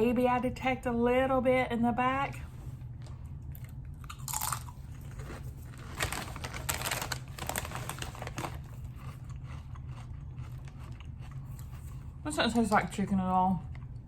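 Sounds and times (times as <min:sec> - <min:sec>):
low steady hum: 0:00.0 - 0:14.0
potato chips crunching: 0:03.6 - 0:11.8.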